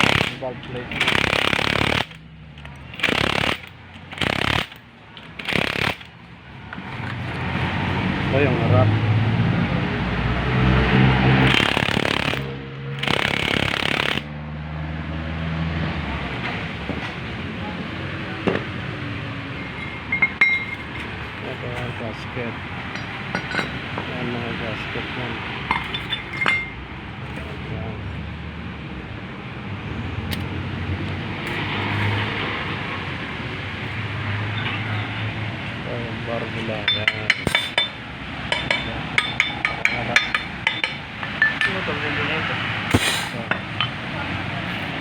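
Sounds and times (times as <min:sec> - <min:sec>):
bursts of harsh noise: 0:00.0 - 0:02.2, 0:02.9 - 0:06.2, 0:11.3 - 0:14.3
engine running: 0:00.0 - 0:14.3.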